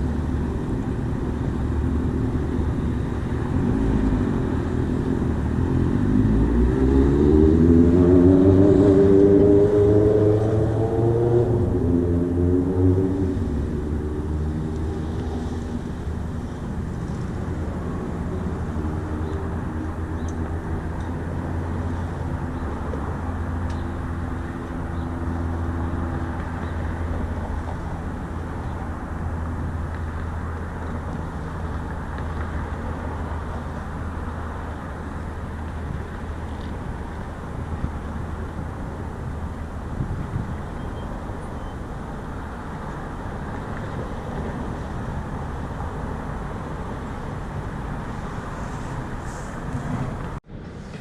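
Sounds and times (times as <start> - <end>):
vehicle passing: 0.0 - 36.4
traffic rumble: 0.0 - 51.0.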